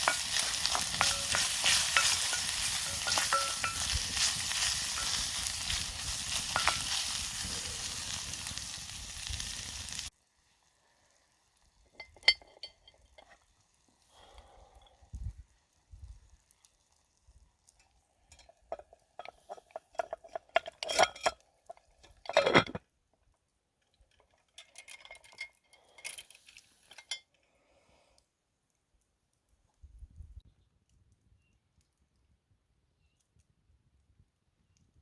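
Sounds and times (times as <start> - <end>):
metal cookware clinking on pot: 0.0 - 8.4, 12.0 - 13.4, 18.3 - 22.8
metal scraping and rattling: 0.0 - 8.5, 18.3 - 22.8.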